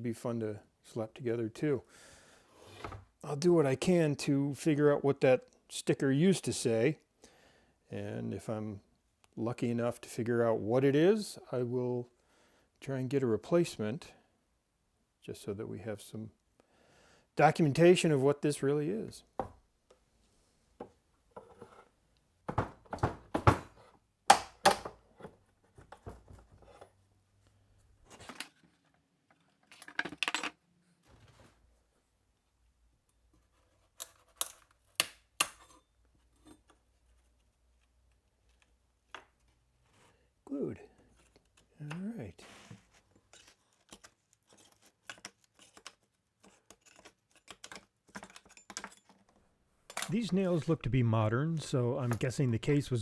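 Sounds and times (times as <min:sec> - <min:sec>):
hard objects knocking and clacking: 0:29.7 - 0:30.6.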